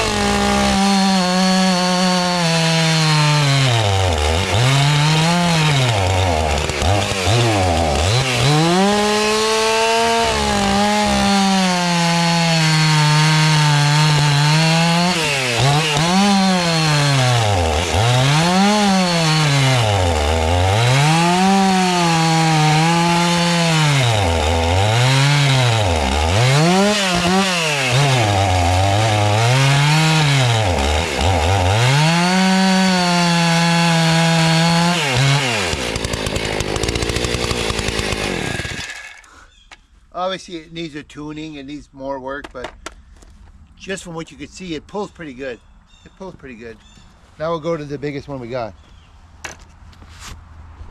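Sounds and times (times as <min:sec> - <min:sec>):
chainsaw revving: 0:00.0 - 0:39.4.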